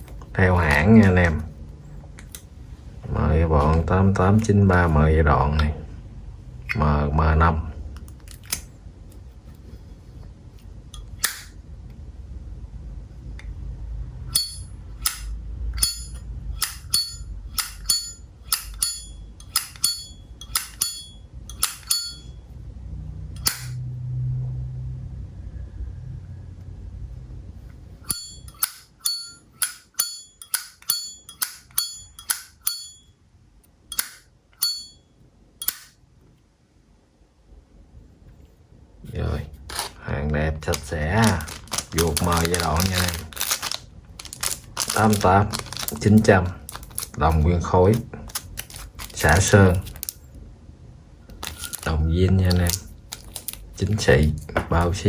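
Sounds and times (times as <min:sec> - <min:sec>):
lighter lid clicking open and shut: 0:35.6 - 0:36.0.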